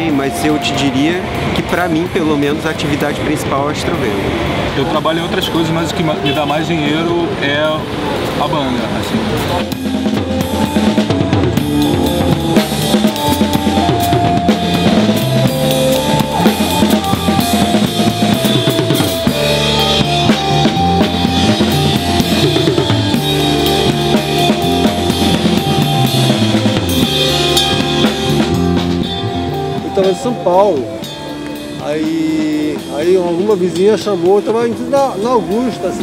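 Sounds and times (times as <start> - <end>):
band playing: 0.0 - 36.0
bass line: 9.4 - 33.6.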